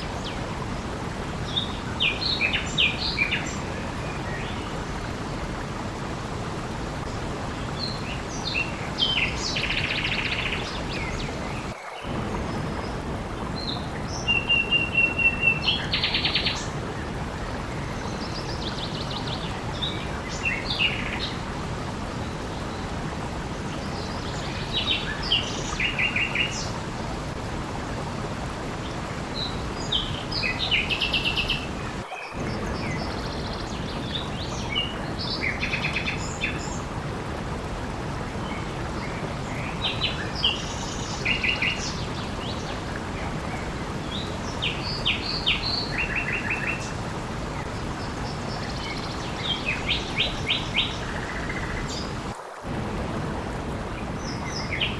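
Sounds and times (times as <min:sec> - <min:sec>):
rushing water: 0:00.0 - 0:54.9.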